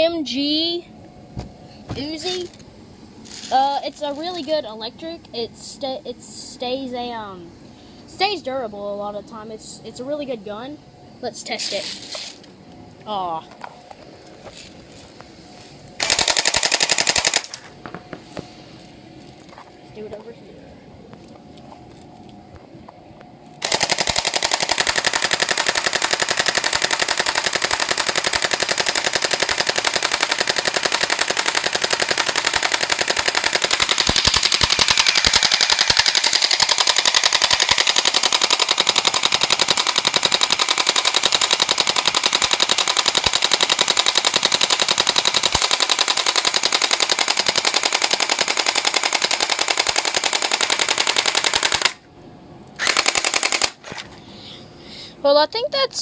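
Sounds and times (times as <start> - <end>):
airsoft gun full auto rattle: 16.0 - 17.9, 23.6 - 52.0, 52.8 - 54.1.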